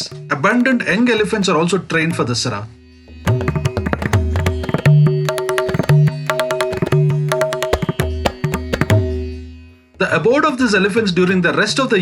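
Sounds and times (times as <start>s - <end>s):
hand drum strokes: 3.1s - 9.3s.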